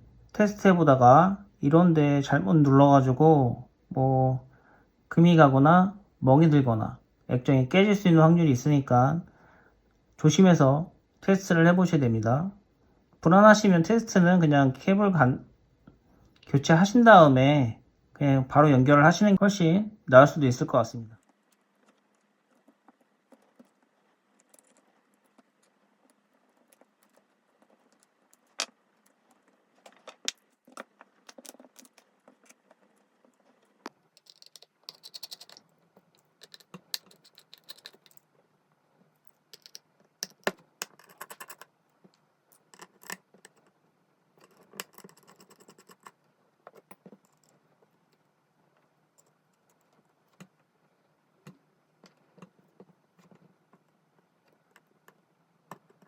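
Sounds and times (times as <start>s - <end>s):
light clicks and taps of tools: 39.1s - 43.8s.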